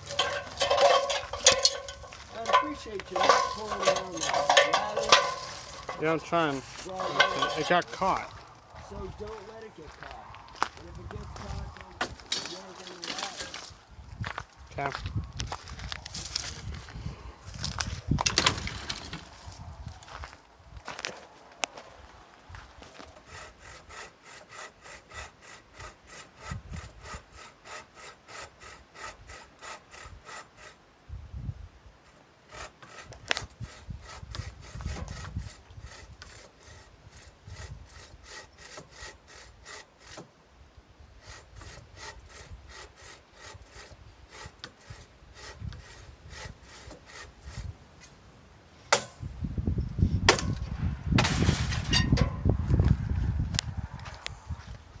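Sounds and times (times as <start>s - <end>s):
hand saw cutting wood: 0.0s - 8.4s, 11.4s - 14.4s, 22.8s - 30.9s, 32.0s - 40.4s, 41.0s - 49.3s, 50.1s - 53.0s
knocks and rustling: 0.0s - 8.5s, 17.6s - 19.7s, 50.2s - 53.1s.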